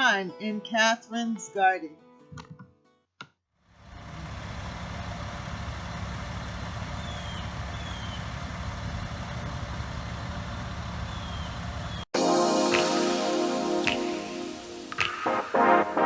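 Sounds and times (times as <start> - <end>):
truck engine humming: 3.7 - 12.1
faint high chirps: 5.8 - 8.4, 11.0 - 12.1.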